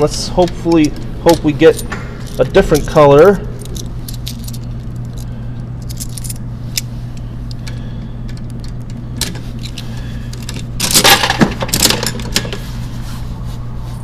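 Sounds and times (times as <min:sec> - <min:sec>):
steady low hum: 0:00.0 - 0:14.0
vending machine rattling clatter: 0:10.4 - 0:12.7.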